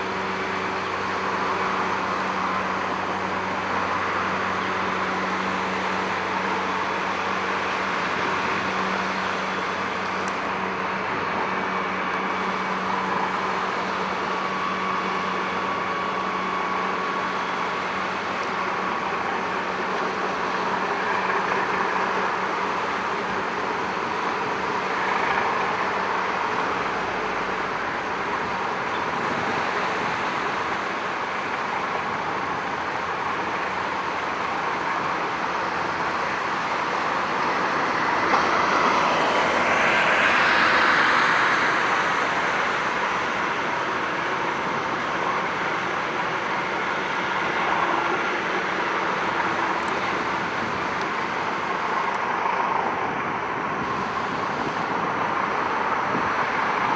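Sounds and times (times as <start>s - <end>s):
road traffic noise: 0.0s - 56.9s
vehicle passing: 37.6s - 44.0s.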